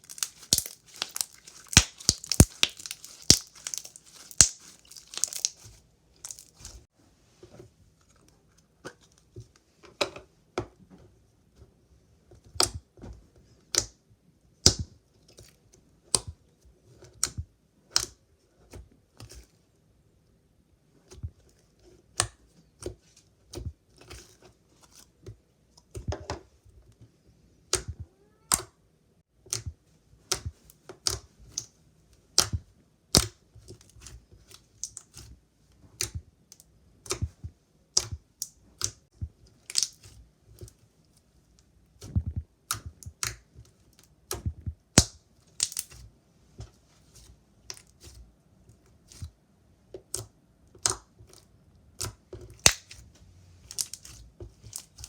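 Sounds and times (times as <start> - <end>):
slime squished clicking and popping: 0.0 - 6.6, 14.6 - 14.9, 32.3 - 33.4, 39.6 - 40.1, 44.2 - 46.0, 52.0 - 53.0.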